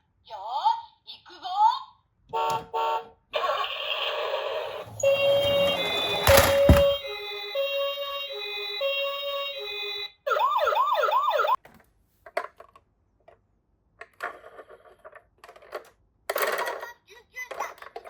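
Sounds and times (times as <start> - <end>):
toy electronic siren: 3.4 - 11.6.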